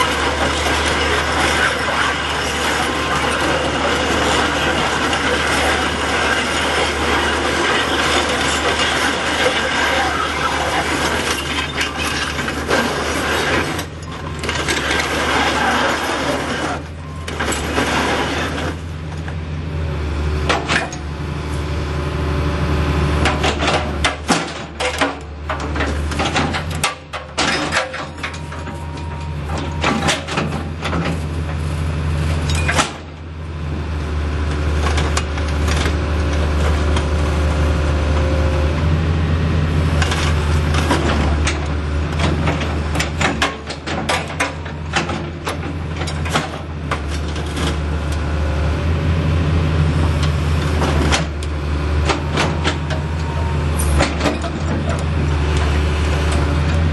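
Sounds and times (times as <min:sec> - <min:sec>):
excavator diesel engine humming: 0:00.0 - 0:56.9
metal clanks and knocks: 0:23.2 - 0:31.2, 0:40.0 - 0:47.8.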